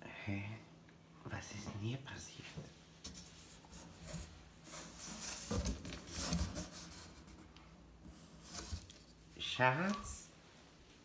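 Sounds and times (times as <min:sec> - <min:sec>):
rubbing and scraping handling noise: 0:03.0 - 0:10.0.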